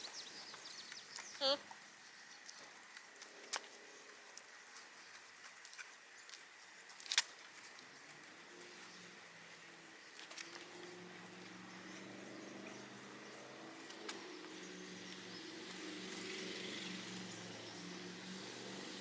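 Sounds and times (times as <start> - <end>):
background hiss: 0.0 - 10.4.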